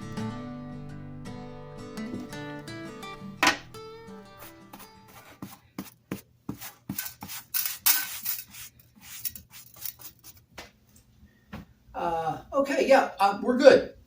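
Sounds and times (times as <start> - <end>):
rusty metal tools scraping: 3.4 - 5.2, 7.0 - 10.1.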